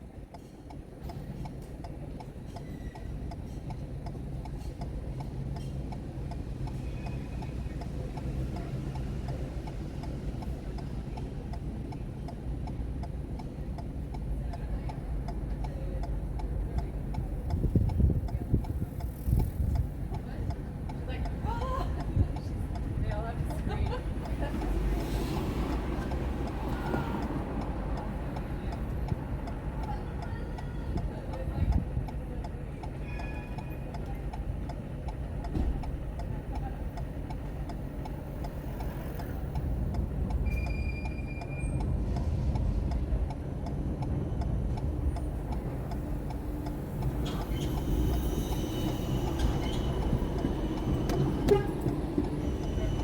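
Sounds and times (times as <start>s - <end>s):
road and engine rumble: 0.0s - 53.0s
turn signal ticking: 0.1s - 53.0s
short high beeps: 40.4s - 41.8s.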